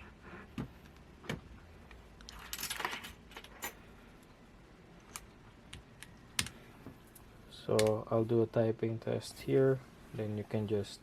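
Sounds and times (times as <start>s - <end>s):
keycaps rattling: 2.2s - 3.8s.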